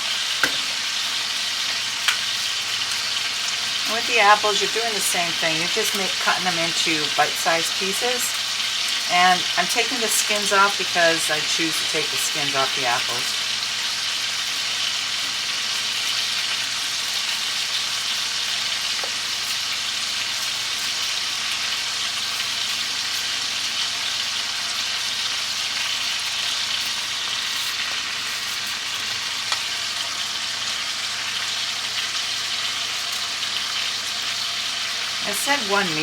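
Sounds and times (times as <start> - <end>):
food sizzling in a skillet: 0.0 - 36.0.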